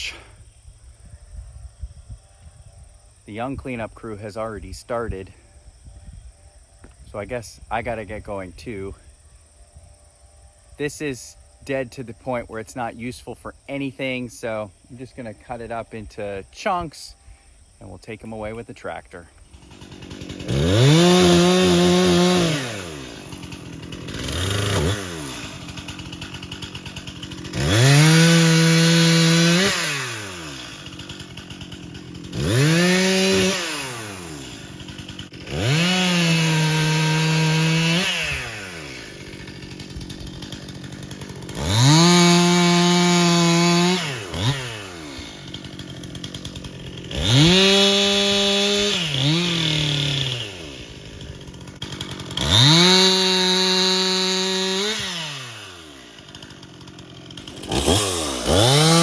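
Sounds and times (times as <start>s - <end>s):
chainsaw revving and idling: 17.8s - 59.0s.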